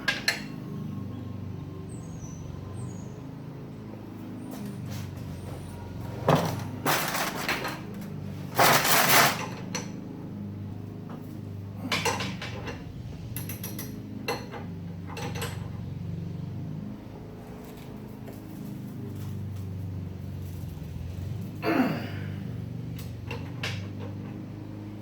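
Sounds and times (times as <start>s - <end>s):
steady low hum: 0.0s - 25.0s
metal tools clinking: 6.3s - 10.0s.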